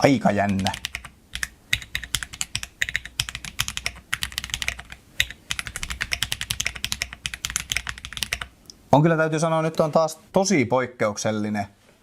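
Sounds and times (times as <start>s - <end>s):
mechanical keyboard keys clacking: 0.4s - 8.5s.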